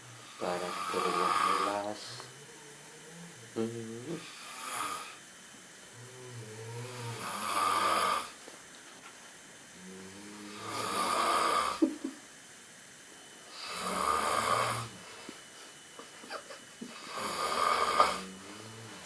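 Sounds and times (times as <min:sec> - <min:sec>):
person snoring: 0:00.0 - 0:05.2, 0:05.9 - 0:08.4, 0:09.8 - 0:11.8, 0:13.5 - 0:15.4, 0:16.9 - 0:19.0.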